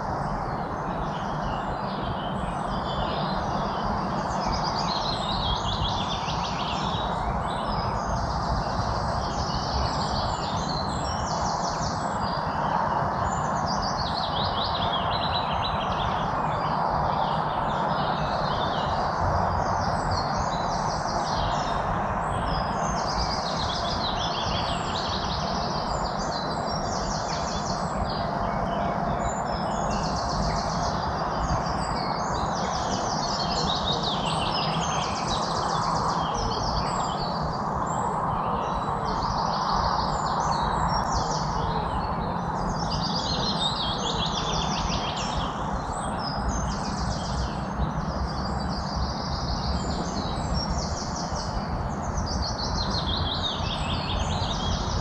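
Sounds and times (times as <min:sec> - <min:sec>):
songbirds chirping and trilling: 0:00.0 - 0:55.0
steady rushing background noise: 0:00.0 - 0:55.0.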